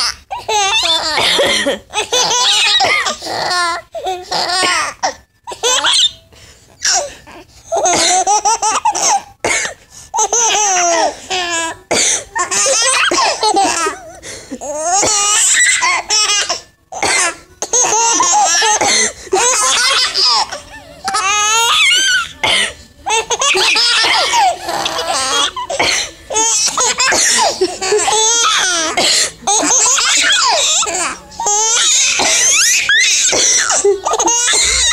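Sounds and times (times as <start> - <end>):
babies laughing: 0.0 - 6.2, 12.4 - 16.6, 17.6 - 22.4, 23.1 - 34.9.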